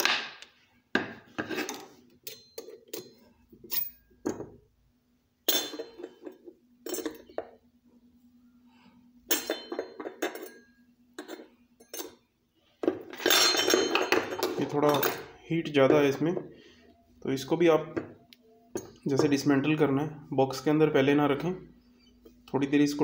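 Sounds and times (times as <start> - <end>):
metal pieces clinking: 1.5 - 4.4, 5.5 - 7.4, 9.3 - 12.2, 12.8 - 15.3.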